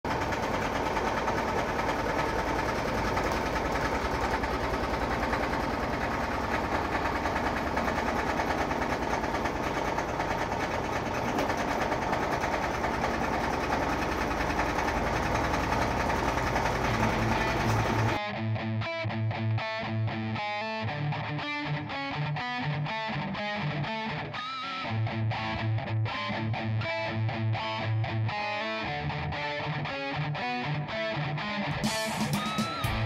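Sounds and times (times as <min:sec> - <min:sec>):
washing machine spinning: 0:00.0 - 0:18.2.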